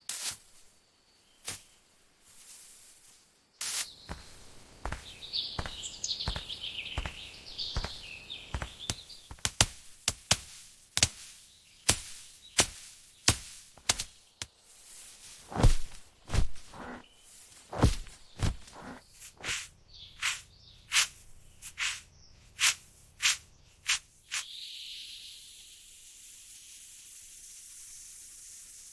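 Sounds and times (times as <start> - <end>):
birds chirping: 3.6 - 25.6
chopping thuds: 7.8 - 14.2, 15.4 - 17.0, 17.7 - 19.0.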